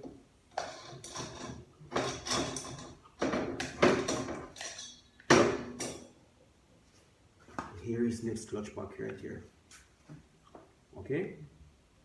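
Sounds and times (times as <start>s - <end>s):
metal parts clinking and clattering: 3.8s - 5.1s.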